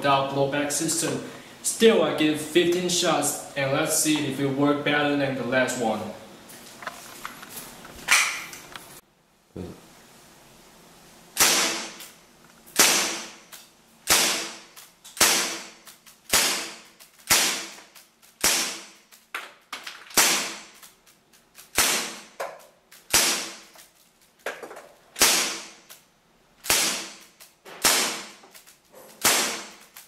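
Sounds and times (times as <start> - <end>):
airsoft pistol firing: 11.4 - 12.1, 12.8 - 13.4, 14.1 - 17.8, 18.4 - 19.0, 20.1 - 20.8, 21.6 - 22.4, 23.0 - 23.7, 25.2 - 25.9, 26.6 - 28.4, 29.2 - 30.0.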